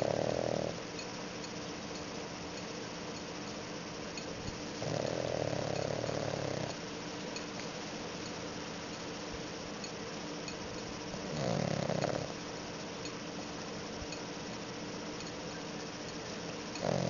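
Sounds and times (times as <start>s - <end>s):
dog snoring: 0.0s - 0.8s, 4.7s - 6.8s, 11.1s - 12.4s, 16.7s - 17.0s
steady background hiss: 0.0s - 17.0s.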